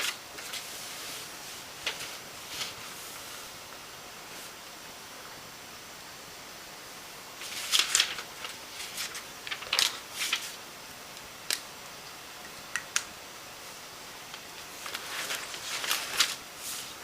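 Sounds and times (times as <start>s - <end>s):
rustling: 0.0s - 3.6s, 7.4s - 10.6s, 14.4s - 17.0s
steady hiss: 0.0s - 17.0s.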